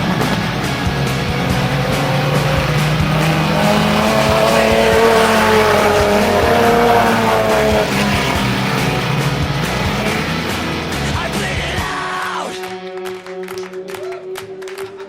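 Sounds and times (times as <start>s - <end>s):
race car engines at high revs: 0.0s - 12.0s.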